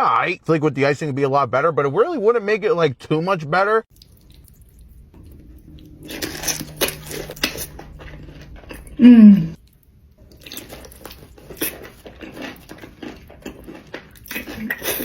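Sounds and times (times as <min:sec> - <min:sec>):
crunchy chewing: 0:03.9 - 0:15.0.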